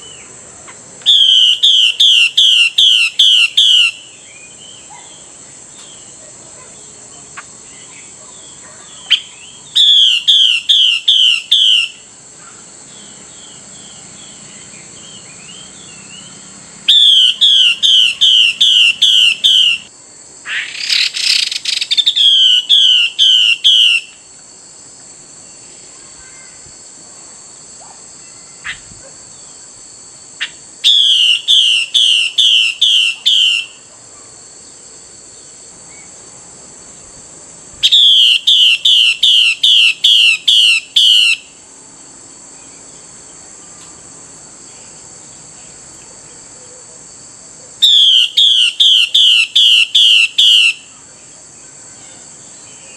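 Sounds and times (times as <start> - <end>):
bird calling: 0.0 - 19.9, 20.5 - 24.2, 30.4 - 33.8, 37.8 - 41.6, 47.8 - 51.1.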